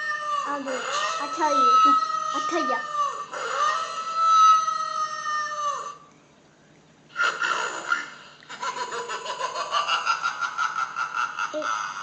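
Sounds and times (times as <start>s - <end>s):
cackle-like warble: 7.1s - 12.0s.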